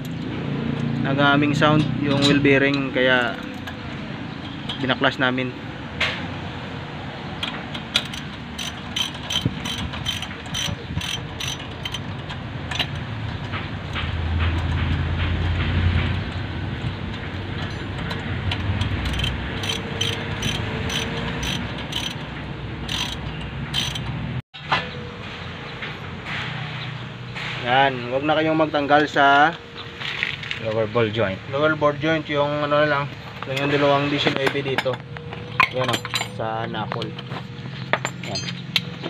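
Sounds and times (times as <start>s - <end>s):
ratchet wrench clicking: 7.4s - 15.6s, 17.1s - 24.2s.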